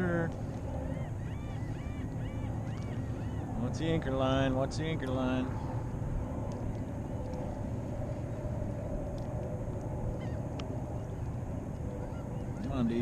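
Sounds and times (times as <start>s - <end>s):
faint hum: 0.0s - 13.0s
water: 0.0s - 13.0s
wind: 0.0s - 13.0s
faint bird chirps: 0.8s - 3.7s.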